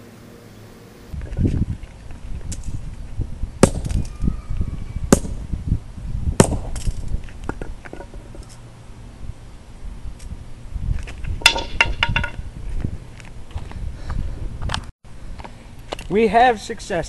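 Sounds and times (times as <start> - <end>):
sledgehammer striking metal padlock: 11.4 - 12.4.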